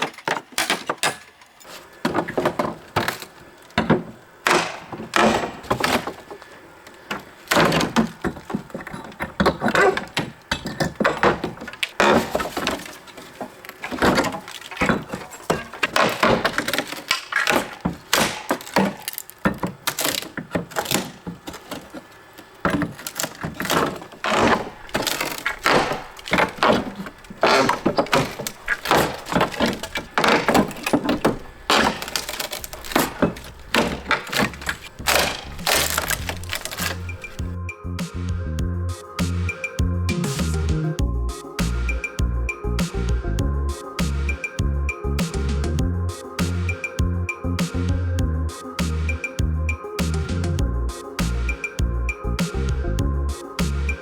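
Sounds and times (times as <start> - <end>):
wood cracking and thudding: 0.0 - 37.6
wood siding boards being torn off: 1.7 - 37.6.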